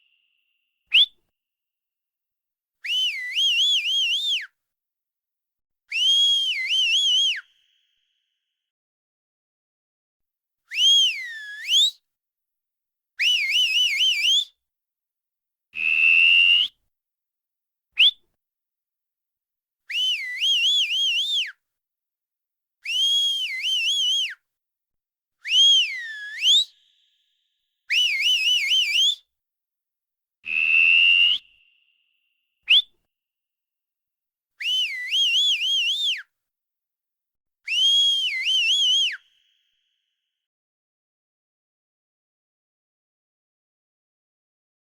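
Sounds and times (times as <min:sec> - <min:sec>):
person whistling: 0:00.9 - 0:01.2, 0:02.8 - 0:04.5, 0:05.9 - 0:07.8, 0:10.7 - 0:12.0, 0:18.0 - 0:18.2, 0:22.9 - 0:24.4, 0:25.4 - 0:27.1, 0:30.5 - 0:31.9, 0:32.7 - 0:32.9, 0:34.6 - 0:36.2, 0:37.7 - 0:39.6.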